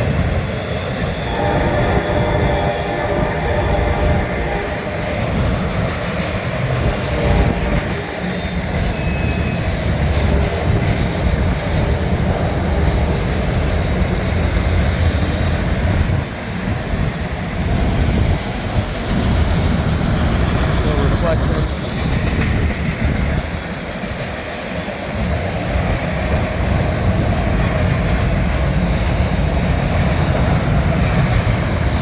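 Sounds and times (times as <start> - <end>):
wheels rumbling on rail: 0.0 - 32.0
high-pitched wheel squeal: 0.4 - 5.0, 7.0 - 9.7, 12.9 - 21.8.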